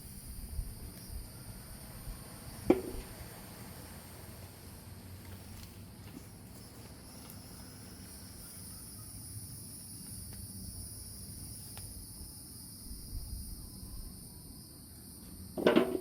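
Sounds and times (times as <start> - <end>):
insects trilling: 0.0 - 16.0
faint ticks: 11.7 - 12.0.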